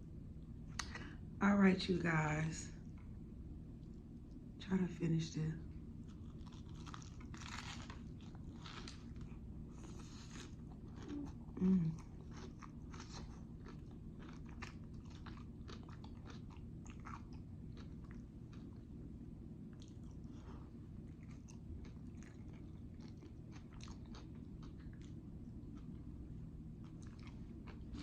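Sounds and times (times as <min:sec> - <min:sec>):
crunchy bites: 0:06.1 - 0:09.3.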